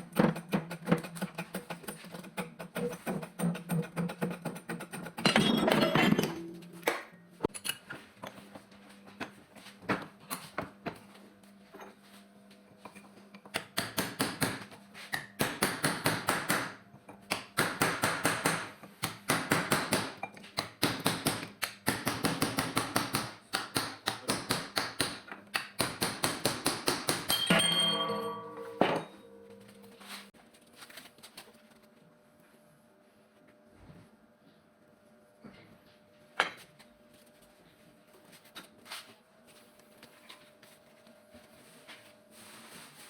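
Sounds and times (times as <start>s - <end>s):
rapid metallic clicking of hand tools: 0.0s - 5.3s.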